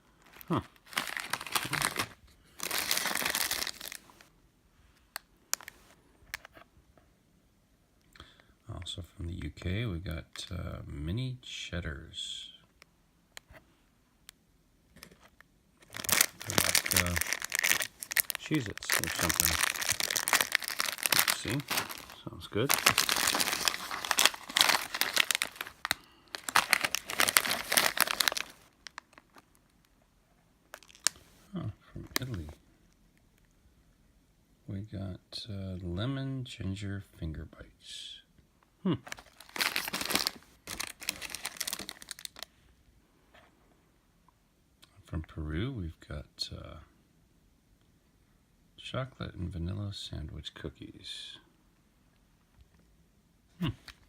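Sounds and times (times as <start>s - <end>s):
plastic snack packet rustling: 0.0s - 4.3s, 15.8s - 29.9s, 30.7s - 31.4s, 32.0s - 32.6s, 39.0s - 42.5s.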